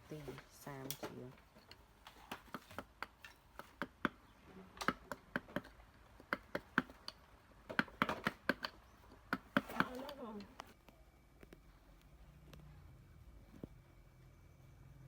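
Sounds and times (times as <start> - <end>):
carving tool tapping wood: 2.4 - 4.2, 4.8 - 10.0.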